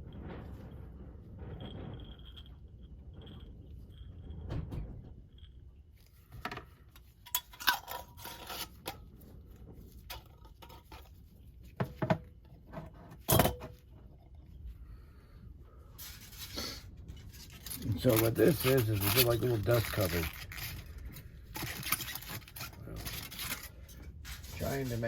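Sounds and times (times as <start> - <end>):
glass jars clinking: 7.3 - 8.6.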